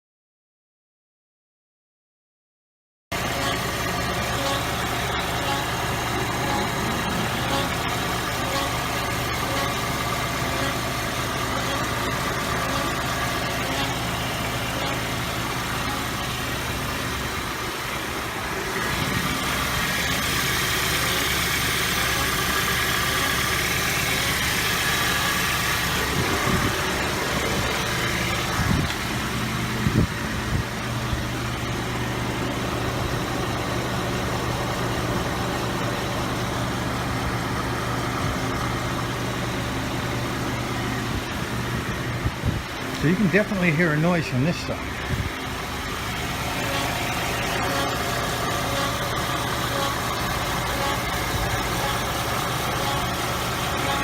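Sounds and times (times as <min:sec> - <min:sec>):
car running: 0:03.1 - 0:54.0.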